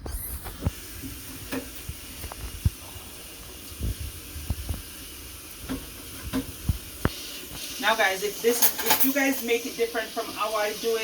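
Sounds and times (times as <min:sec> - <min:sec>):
kitchen knocks and clatters: 0:00.0 - 0:03.0, 0:03.8 - 0:07.7, 0:08.4 - 0:09.6
meat sauce sizzling in a pan: 0:00.0 - 0:11.0.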